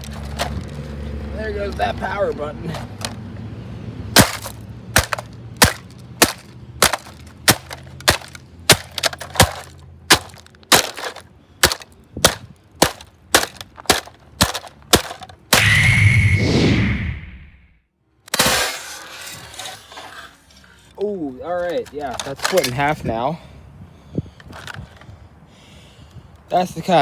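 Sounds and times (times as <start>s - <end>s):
hammer smashing plastic housing: 4.2s - 15.7s, 18.3s - 20.0s
loud noise with high steady tone: 15.6s - 17.4s.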